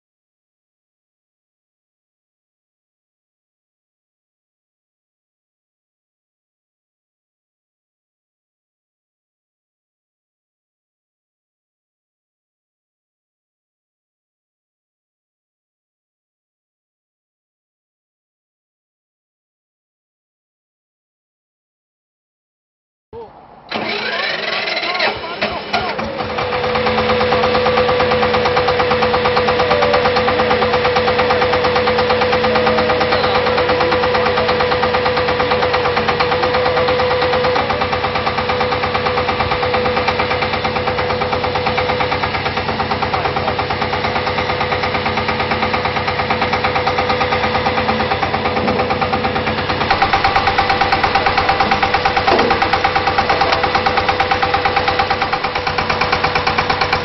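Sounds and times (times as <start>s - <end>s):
drilling rig pulsing din: 23.2s - 44.8s, 46.4s - 57.0s.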